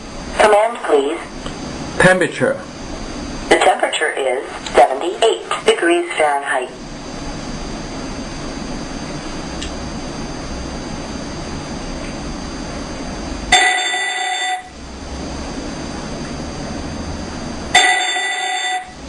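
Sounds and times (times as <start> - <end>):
electronic alarm ringing: 13.5 - 14.8, 17.7 - 19.0.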